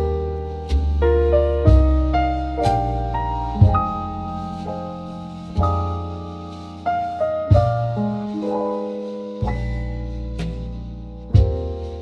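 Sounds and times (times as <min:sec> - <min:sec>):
deep bass note: 0:00.0 - 0:08.4, 0:09.4 - 0:12.0
electric piano chords: 0:01.0 - 0:12.0
soft drum hit: 0:03.6 - 0:04.1, 0:07.5 - 0:08.0, 0:11.4 - 0:11.7.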